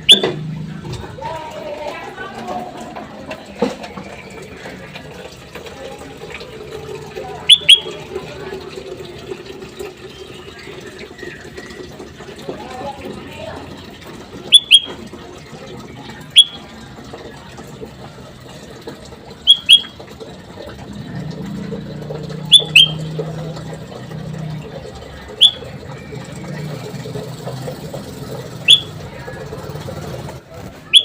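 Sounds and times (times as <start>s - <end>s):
bird high call notes: 7.5s - 7.9s, 14.5s - 14.9s, 19.5s - 19.9s, 22.5s - 23.1s, 25.4s - 25.7s, 28.6s - 28.9s.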